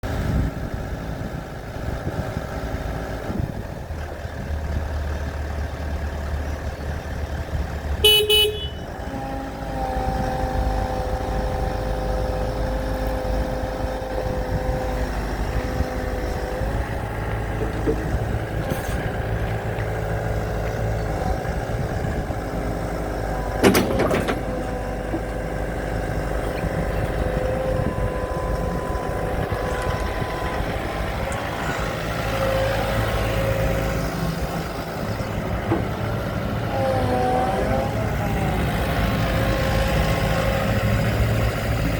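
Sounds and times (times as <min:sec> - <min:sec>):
excavator diesel engine running: 0:00.0 - 0:41.9
short horn toot: 0:08.0 - 0:08.8.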